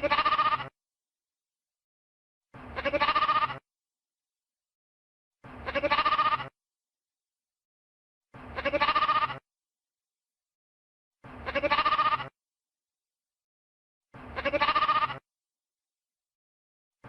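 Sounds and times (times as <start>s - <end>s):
lamb bleating: 0.0s - 0.7s, 2.7s - 3.6s, 5.6s - 6.6s, 8.5s - 9.4s, 11.4s - 12.4s, 14.3s - 15.2s.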